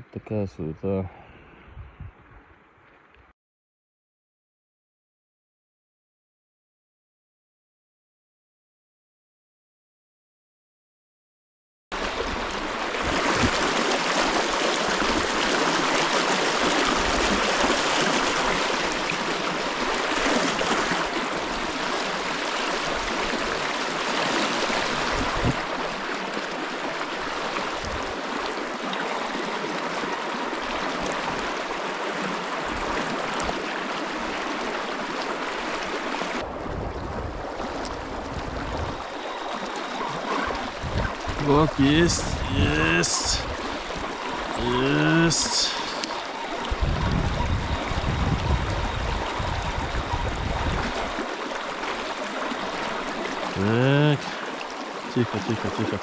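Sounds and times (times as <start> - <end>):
river water rushing: 12.0 - 36.6, 37.4 - 48.1, 48.8 - 56.0.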